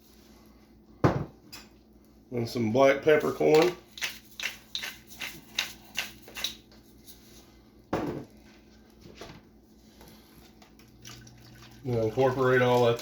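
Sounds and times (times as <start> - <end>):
pepper mill grinding: 3.2 - 6.6.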